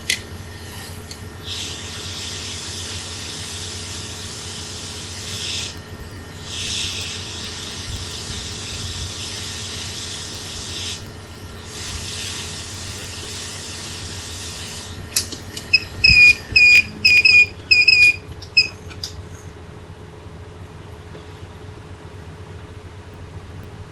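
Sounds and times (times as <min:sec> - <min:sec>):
hot air station hissing: 0:00.0 - 0:19.6
short loud electronic beeps: 0:15.4 - 0:18.8.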